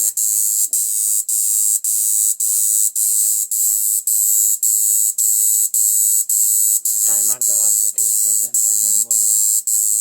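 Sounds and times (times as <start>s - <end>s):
pulsing high-pitched electric buzz: 6.9s - 9.5s.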